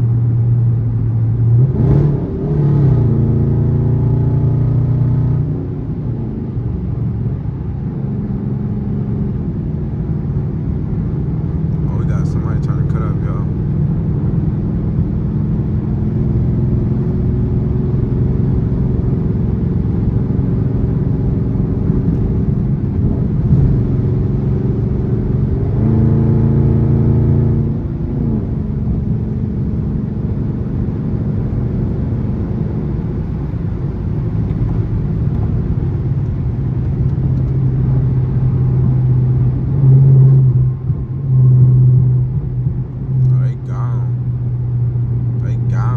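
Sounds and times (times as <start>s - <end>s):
car engine exhaust drone: 0.0s - 45.9s.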